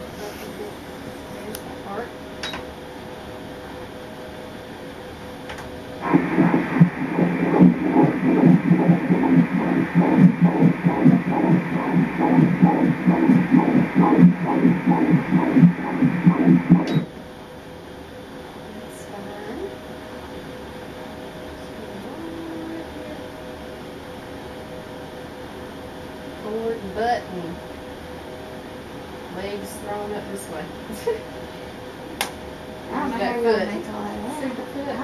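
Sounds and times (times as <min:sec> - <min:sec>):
fetal heartbeat whooshing pulses: 0:06.0 - 0:17.1.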